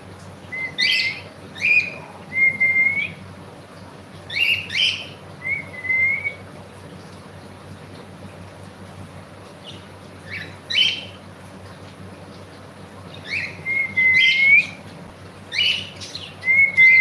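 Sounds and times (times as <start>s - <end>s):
cockatiel chirps and whistles: 13.3s - 14.7s.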